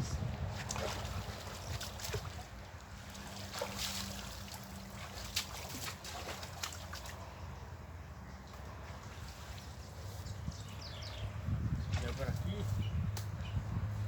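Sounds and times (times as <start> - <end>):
water sloshing and trickling: 0.0 - 12.8
small water splashes: 0.4 - 7.3, 8.6 - 10.3, 11.8 - 12.6.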